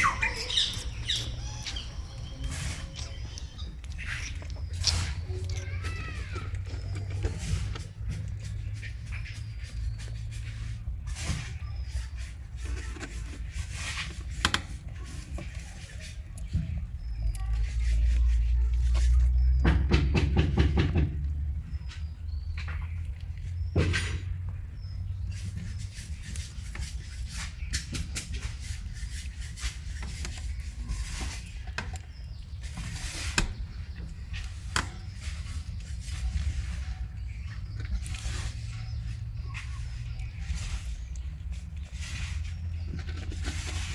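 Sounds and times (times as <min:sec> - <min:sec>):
rabbit sucking milk: 0:00.0 - 0:19.6
rubbing noises: 0:00.0 - 0:22.1, 0:24.8 - 0:43.9.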